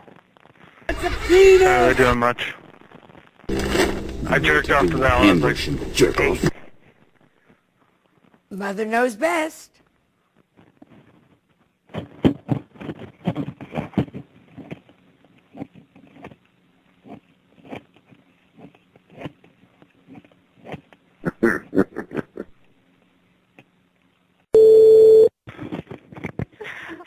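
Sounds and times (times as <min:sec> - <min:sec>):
telephone line hum: 0:24.6 - 0:25.3
telephone tone: 0:24.6 - 0:25.3.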